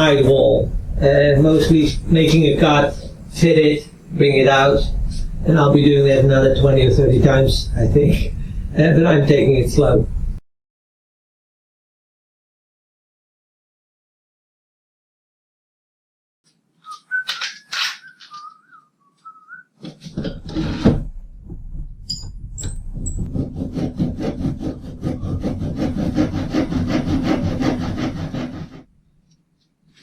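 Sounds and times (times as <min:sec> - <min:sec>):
person whistling a tune: 0:16.8 - 0:19.7
tool rasping on plywood: 0:20.1 - 0:21.0, 0:22.6 - 0:28.9.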